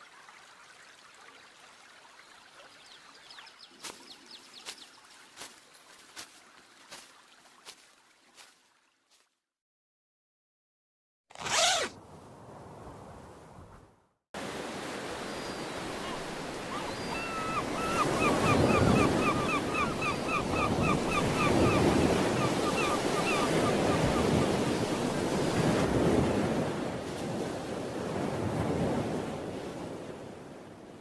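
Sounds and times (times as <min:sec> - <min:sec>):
ocean surf breaking: 0:14.4 - 0:30.5.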